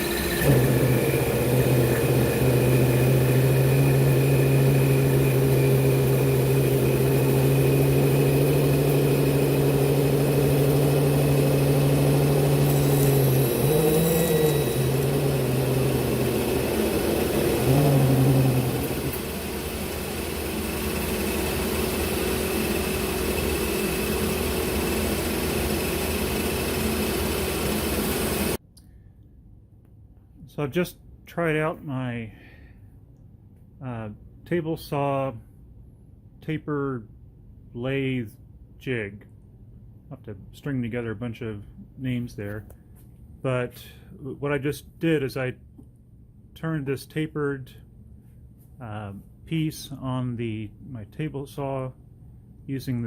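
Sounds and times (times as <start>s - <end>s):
quieter steady machine noise: 0.0s - 28.6s
table saw cutting wood: 0.0s - 28.6s.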